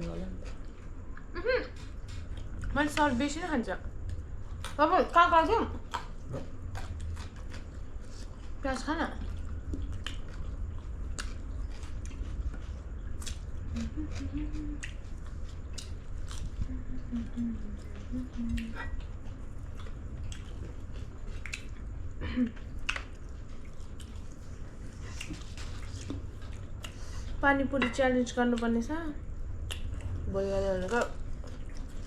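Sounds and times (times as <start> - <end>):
steady low hum: 0.0 - 32.0
person chewing food: 5.8 - 8.6, 9.2 - 27.4, 29.5 - 30.2, 31.0 - 32.0.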